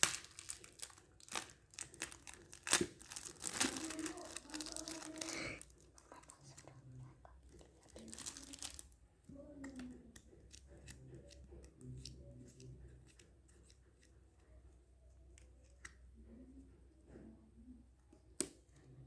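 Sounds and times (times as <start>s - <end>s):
packaging being opened: 0.0s - 6.6s, 7.8s - 8.9s.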